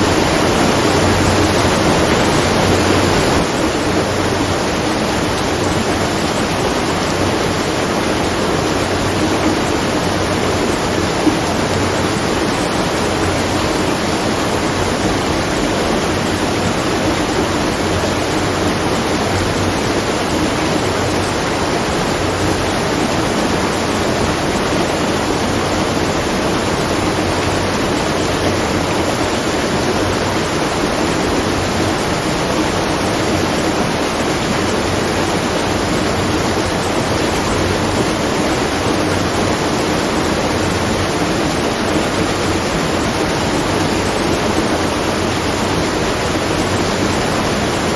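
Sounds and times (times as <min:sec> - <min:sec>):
rush of falling water: 0:00.0 - 0:47.9.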